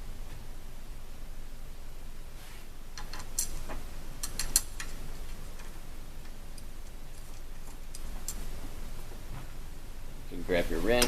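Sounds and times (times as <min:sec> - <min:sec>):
metallic clicks and taps: 0:04.2 - 0:05.0.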